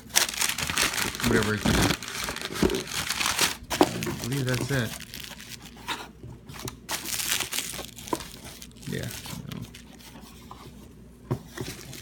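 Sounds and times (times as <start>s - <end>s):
packaging crinkling: 0.0s - 5.9s, 6.9s - 10.2s, 11.6s - 12.0s.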